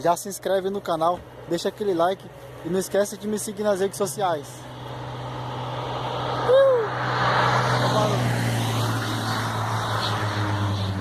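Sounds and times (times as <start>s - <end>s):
motor vehicle passing: 1.4s - 11.0s
rising and falling tone: 5.4s - 11.0s.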